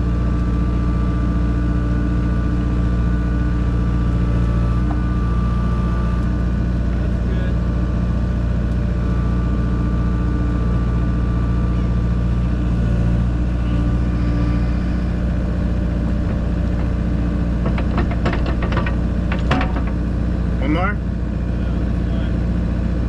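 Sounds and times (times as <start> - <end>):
machine engine running: 1.7 - 23.0
quick knocks: 16.2 - 20.1.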